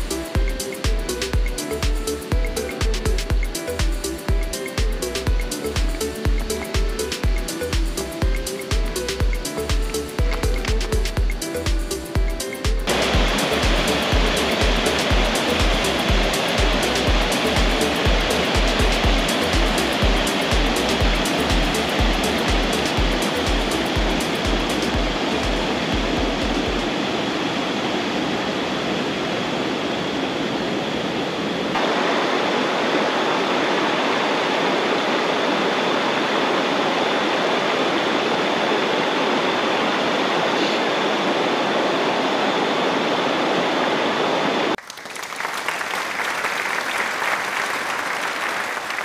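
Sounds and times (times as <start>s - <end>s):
dense crackling hiss: 0.0s - 27.6s, 44.0s - 49.0s
flowing water rushing: 0.0s - 49.0s.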